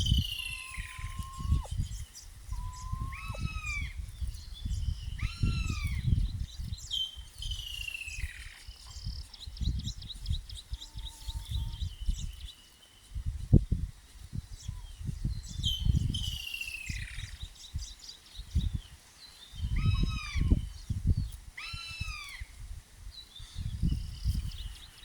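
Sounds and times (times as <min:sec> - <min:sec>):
wild birds calling: 0:00.0 - 0:06.2, 0:19.3 - 0:20.8.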